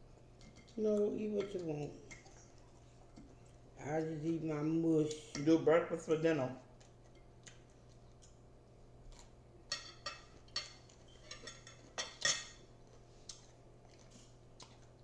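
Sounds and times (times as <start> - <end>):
utensil clicking against a dish: 0.4 - 3.4, 9.2 - 12.6.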